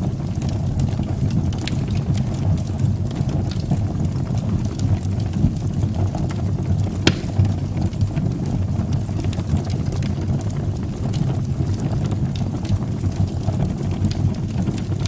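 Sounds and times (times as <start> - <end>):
flames rumbling in fireplace: 0.0 - 15.0
fire crackling and popping: 2.6 - 10.2.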